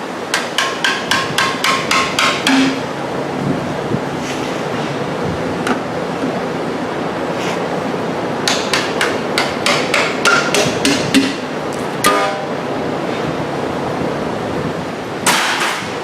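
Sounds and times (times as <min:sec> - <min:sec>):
hammer striking metal: 0:00.3 - 0:02.9, 0:08.4 - 0:11.4, 0:12.0 - 0:12.5.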